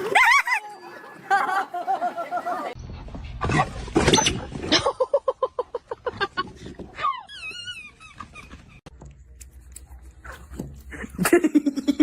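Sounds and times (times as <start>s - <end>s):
dog yipping: 7.0s - 8.8s.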